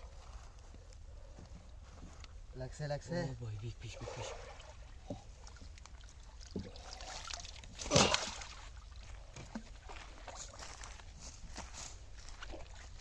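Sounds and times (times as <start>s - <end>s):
water splashing and trickling: 3.0s - 13.0s.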